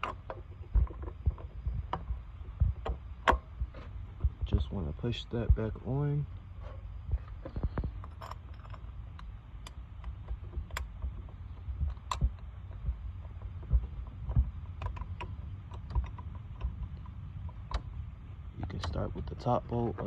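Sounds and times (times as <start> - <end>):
metal parts clicking and knocking: 0.0 - 2.1, 7.3 - 18.0
low background rumble: 0.0 - 20.0.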